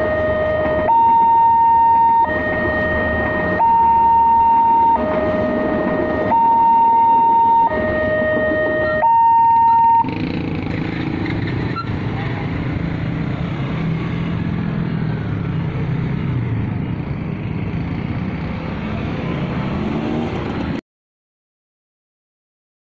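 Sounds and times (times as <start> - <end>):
level crossing warning siren: 0.0 - 10.4
cars passing: 0.0 - 20.8
motorcycles passing: 0.0 - 20.8.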